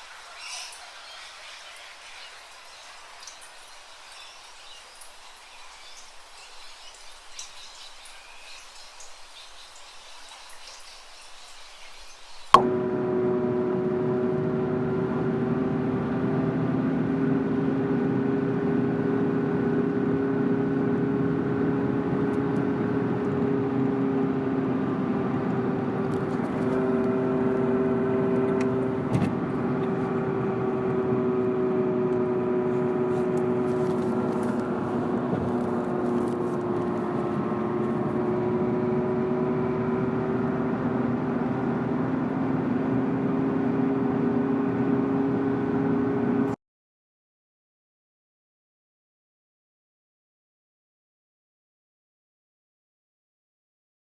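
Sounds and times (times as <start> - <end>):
car engine humming: 12.6 - 46.5.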